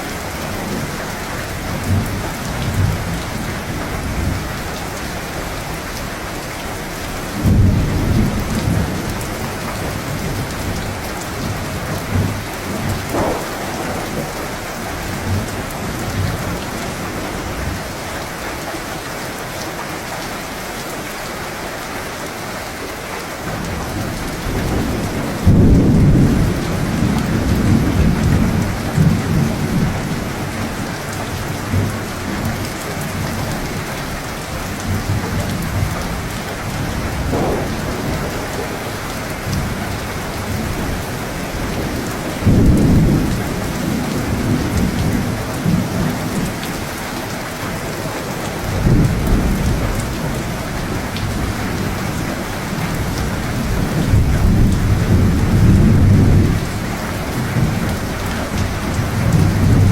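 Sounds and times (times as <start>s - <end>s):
heavy rain falling: 0.0s - 59.9s
thunder rumbling: 7.2s - 17.8s, 34.8s - 46.9s.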